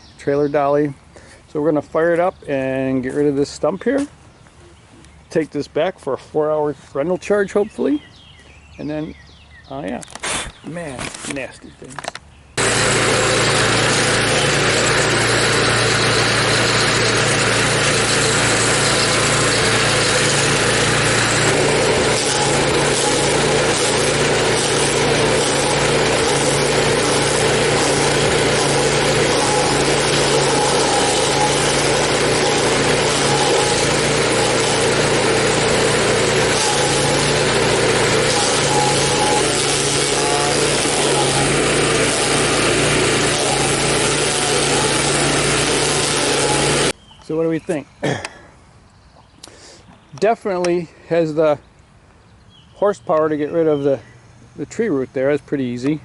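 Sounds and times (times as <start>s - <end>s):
cutter wheel grinding root: 9.9s - 47.0s
stump grinder engine running: 12.6s - 47.0s.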